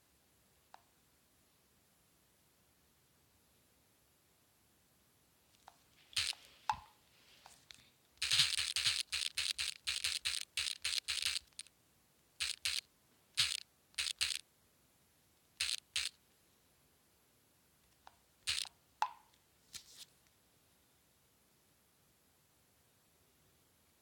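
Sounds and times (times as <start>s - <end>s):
taps on a phone screen: 6.7s - 6.9s, 19.0s - 19.3s.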